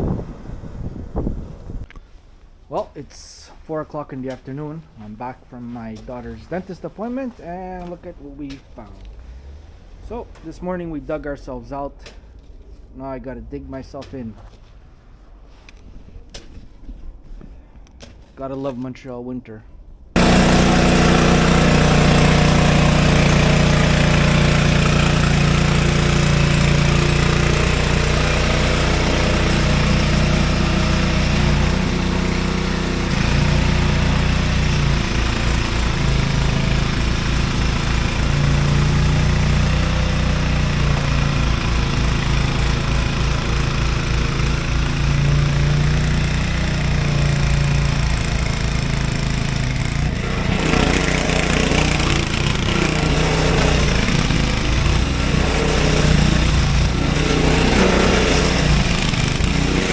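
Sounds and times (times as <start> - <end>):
snowblower engine running: 20.2 - 59.9.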